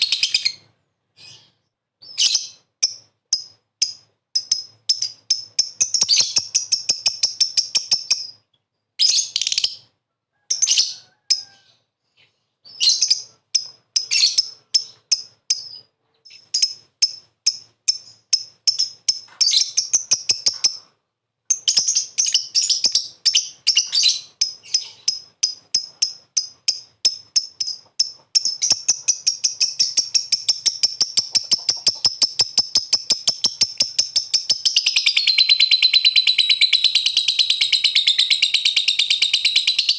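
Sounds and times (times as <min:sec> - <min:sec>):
lovebird chirping and chattering: 0:00.0 - 0:09.9, 0:10.5 - 0:39.9.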